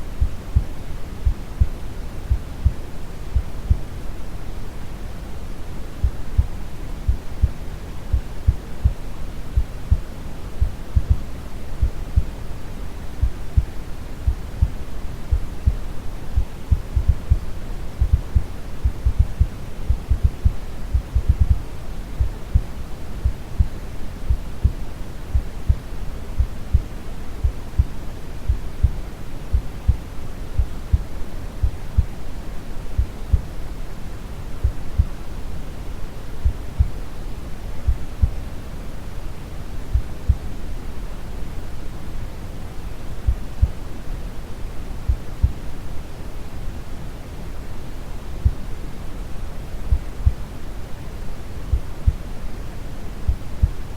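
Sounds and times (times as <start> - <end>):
heartbeat thumps: 0.2 - 3.9, 6.0 - 9.0, 9.6 - 12.4, 13.2 - 32.2, 33.0 - 33.6, 34.6 - 35.2, 37.9 - 38.4, 39.9 - 40.4, 43.3 - 43.8, 45.1 - 45.6, 48.4 - 48.7, 49.9 - 50.4, 51.7 - 52.3, 53.3 - 53.9.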